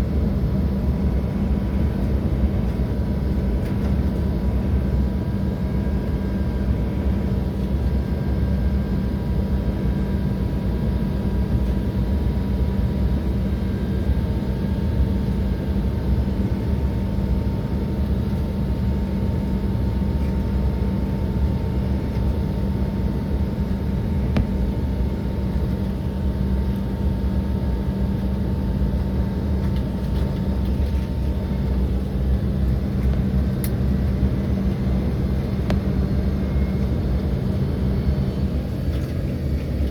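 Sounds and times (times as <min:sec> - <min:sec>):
faint whine: 0:00.0 - 0:39.9
jet aircraft drone: 0:00.0 - 0:39.9.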